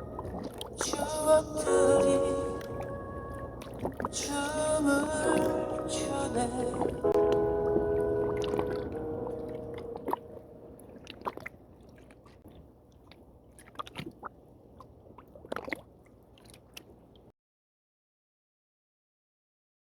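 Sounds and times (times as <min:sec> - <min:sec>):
song: 0:00.0 - 0:10.7
small squishy ticks: 0:11.0 - 0:17.3.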